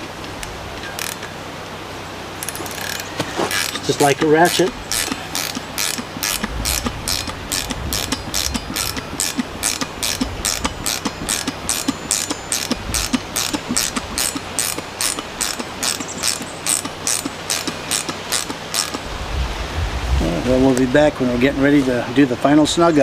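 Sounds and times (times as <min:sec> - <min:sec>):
ratcheting wrench clicking: 0:00.4 - 0:01.2, 0:02.4 - 0:19.0.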